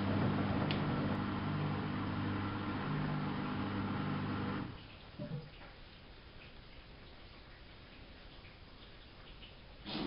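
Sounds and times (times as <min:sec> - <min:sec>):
washing machine running: 0:00.0 - 0:04.8.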